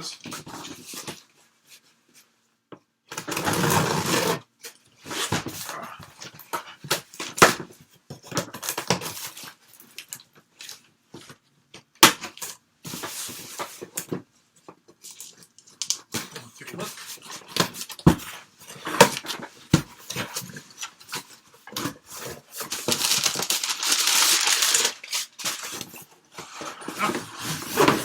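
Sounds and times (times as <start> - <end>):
cardboard scraping and tearing: 3.3 - 4.4, 21.8 - 26.0, 26.8 - 28.0.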